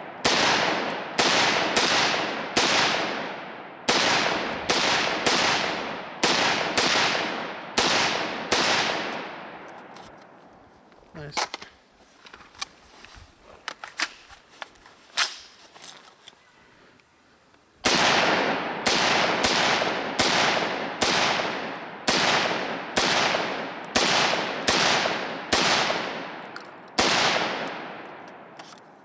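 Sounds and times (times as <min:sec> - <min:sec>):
pistol shots with long echo: 0:00.0 - 0:10.0, 0:17.8 - 0:28.6.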